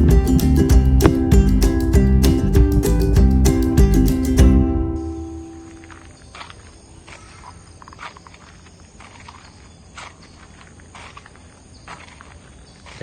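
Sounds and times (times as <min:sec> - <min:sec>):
guitar music: 0:00.0 - 0:06.1.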